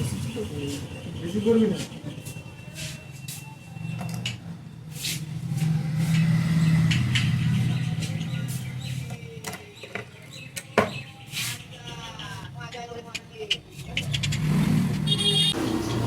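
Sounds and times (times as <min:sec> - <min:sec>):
vehicle engine hum passing: 0:04.6 - 0:09.2, 0:13.7 - 0:16.0.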